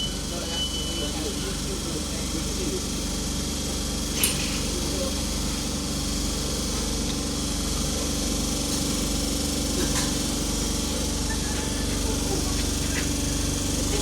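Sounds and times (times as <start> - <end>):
train equipment humming: 0.0 - 14.0
sharp click: 4.2 - 4.6.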